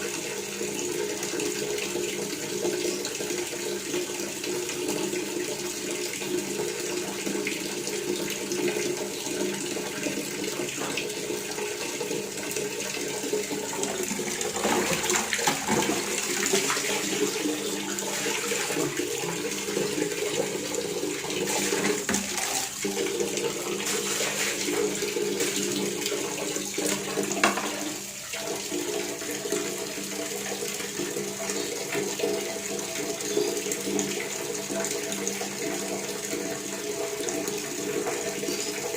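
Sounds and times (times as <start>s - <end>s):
water running from a faucet: 0.0s - 38.9s.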